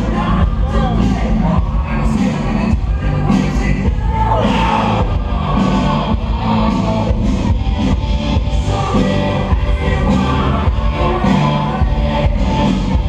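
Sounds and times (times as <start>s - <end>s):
live rock band playing: 0.0s - 13.0s.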